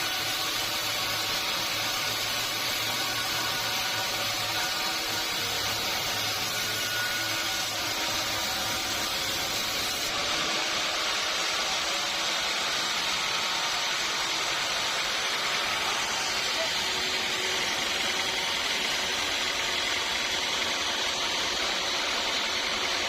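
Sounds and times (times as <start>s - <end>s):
sawmill machinery hissing: 0.0s - 23.0s.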